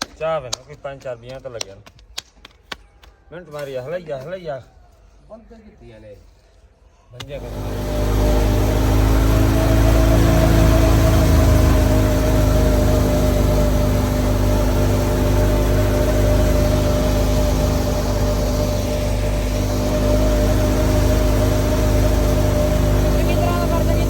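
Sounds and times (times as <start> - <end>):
heavy engine running with whine: 7.2 - 24.0.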